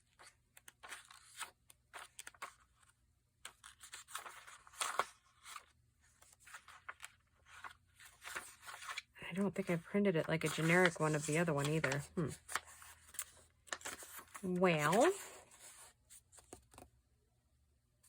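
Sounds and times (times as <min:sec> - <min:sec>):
paper sheets rustling: 0:03.5 - 0:16.8.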